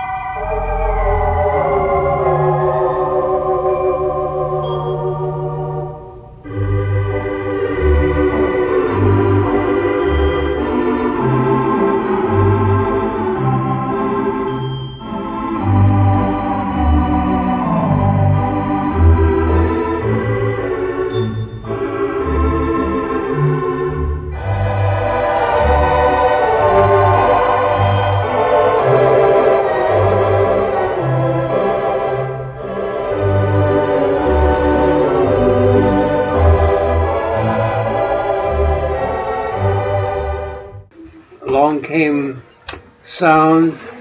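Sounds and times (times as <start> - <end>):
theatre organ playing chords: 0.0 - 41.0.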